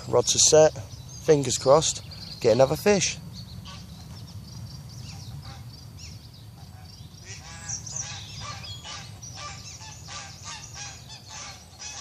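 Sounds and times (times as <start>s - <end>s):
steady low rumble: 0.0s - 11.9s
geese honking: 3.6s - 3.9s, 5.1s - 5.7s, 6.6s - 12.0s.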